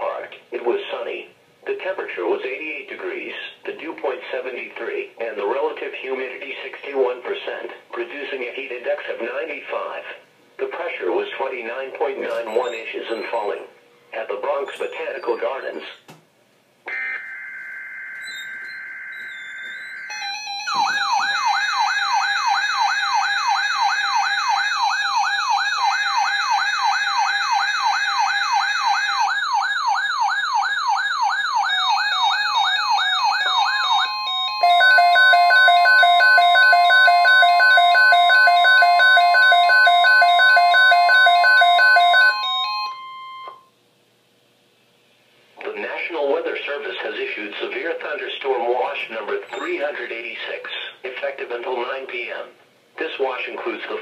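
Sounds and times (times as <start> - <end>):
rapid pulsing beeps: 12.4 - 13.7, 18.1 - 22.0, 31.6 - 43.6
screeching digital data tones: 12.4 - 13.7, 14.6 - 16.0, 16.9 - 21.4
electronic siren alarm wailing: 12.5 - 13.7, 16.9 - 43.7
steady alert tone: 16.9 - 22.7.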